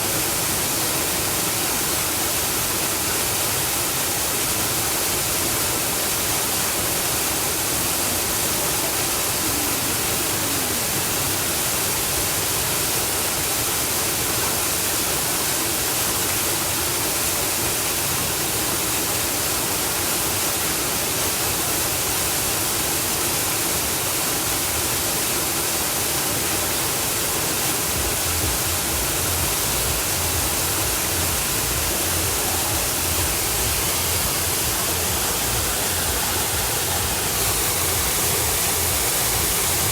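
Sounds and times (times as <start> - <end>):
waterfall rushing: 0.0 - 39.9
low rumble: 29.2 - 39.9.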